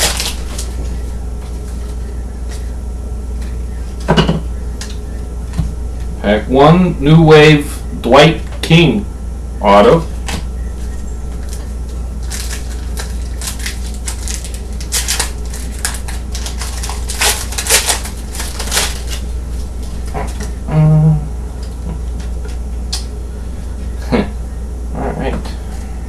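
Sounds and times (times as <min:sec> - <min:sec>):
cards shuffling: 0:00.0 - 0:02.7, 0:10.8 - 0:20.6
foil wrapper crinkling: 0:00.0 - 0:02.8, 0:10.2 - 0:20.6.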